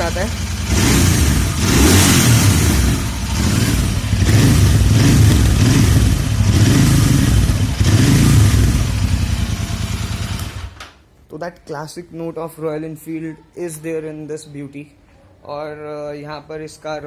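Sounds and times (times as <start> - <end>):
motorcycle engine revving: 0.0 - 10.8.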